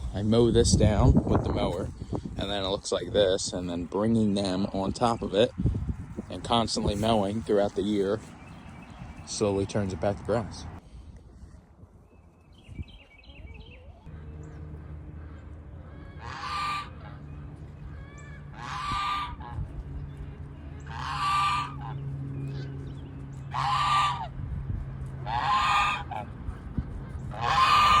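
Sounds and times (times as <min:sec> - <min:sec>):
steady low hum: 0:13.9 - 0:28.0
farm bird honking squawk: 0:14.1 - 0:19.8, 0:20.6 - 0:24.4, 0:25.2 - 0:26.3, 0:27.0 - 0:28.0.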